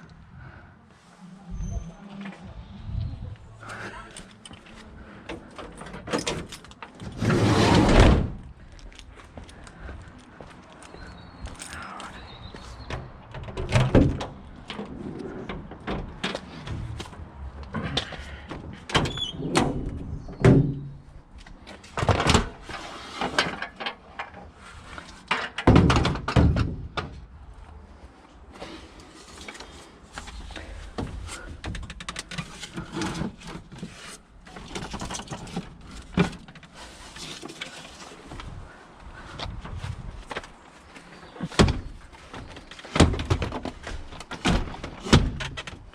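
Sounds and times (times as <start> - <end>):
objects knocking and thudding: 25.3 - 27.2.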